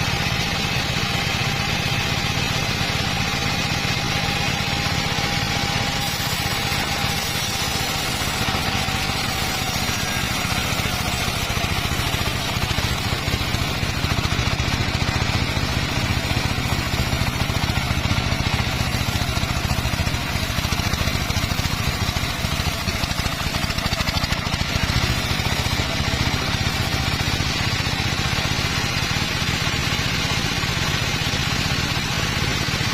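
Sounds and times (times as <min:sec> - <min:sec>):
circular saw running: 0:00.0 - 0:32.9.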